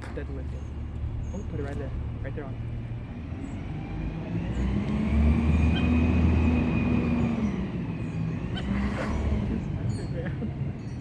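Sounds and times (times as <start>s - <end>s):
tyre and engine whine: 0.0s - 11.0s
vehicle passing close by: 2.8s - 10.0s.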